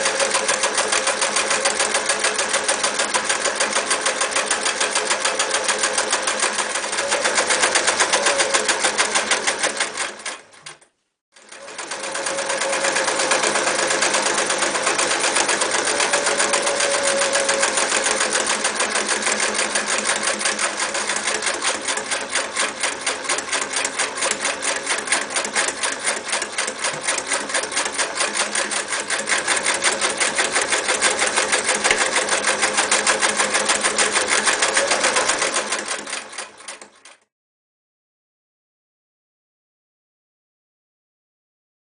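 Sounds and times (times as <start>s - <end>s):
electric sewing machine stitching: 0.0s - 37.3s.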